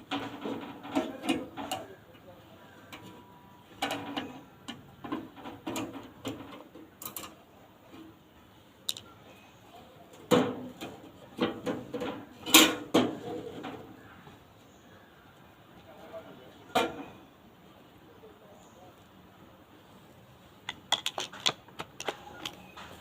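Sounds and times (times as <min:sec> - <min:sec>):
clicks and knocks: 0:20.7 - 0:23.0.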